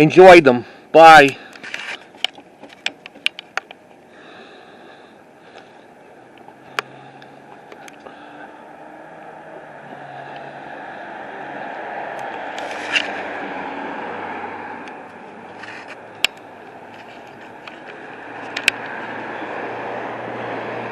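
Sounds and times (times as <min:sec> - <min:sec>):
vehicle passing by: 0:04.4 - 0:20.9.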